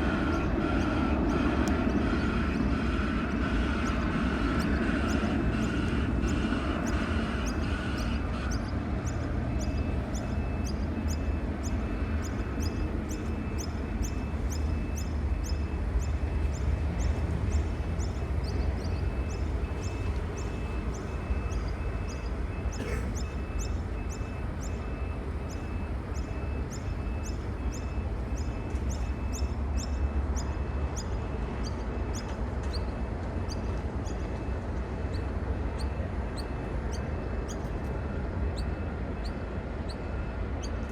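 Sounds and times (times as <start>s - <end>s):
steady low rumble: 0.0s - 40.7s.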